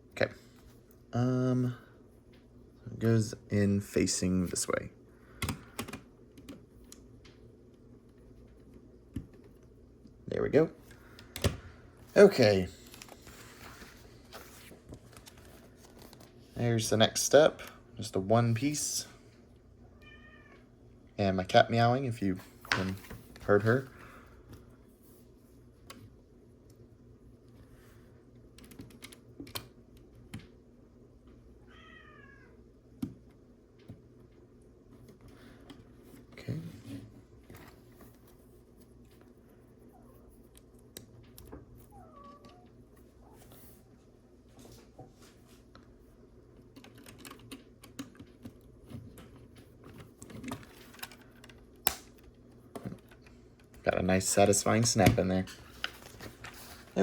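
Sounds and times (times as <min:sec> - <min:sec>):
cat meowing: 0:19.9 - 0:20.6, 0:31.6 - 0:32.6, 0:41.9 - 0:42.7.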